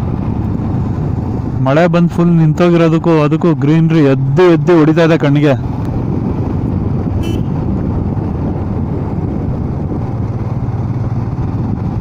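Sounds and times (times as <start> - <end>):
wind noise on microphone: 0.0 - 12.0
motorcycle engine running: 5.6 - 12.0.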